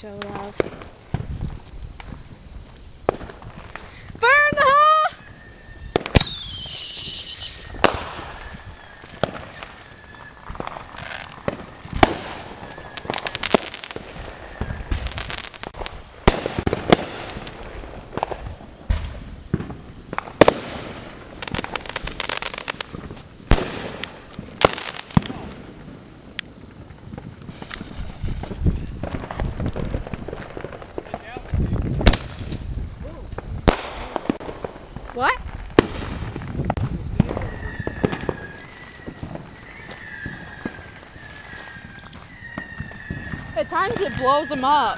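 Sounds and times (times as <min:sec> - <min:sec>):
firework bangs and crackling: 0:00.0 - 0:44.9
firework whistle: 0:03.1 - 0:17.6, 0:31.1 - 0:44.9.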